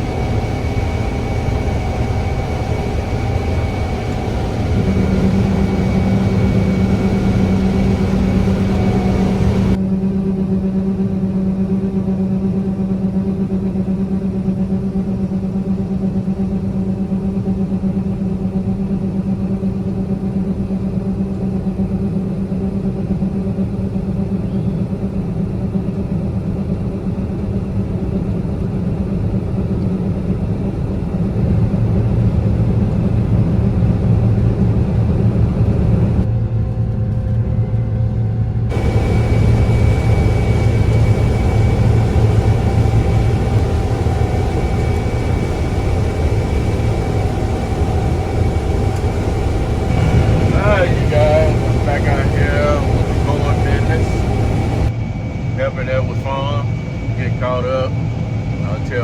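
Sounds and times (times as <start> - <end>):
heavy vehicle engine running: 0.0 - 15.4, 29.0 - 56.6.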